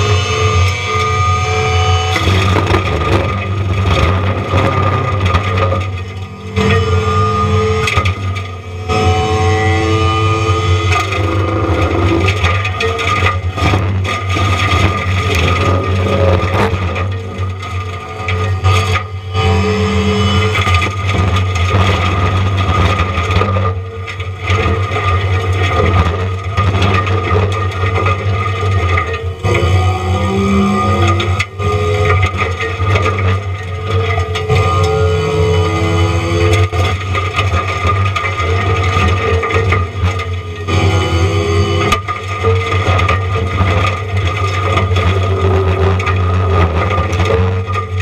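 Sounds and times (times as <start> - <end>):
diesel engine running: 0.0 - 48.0
mulching head grinding trees: 0.0 - 48.0
wood cracking and splintering: 0.0 - 48.0.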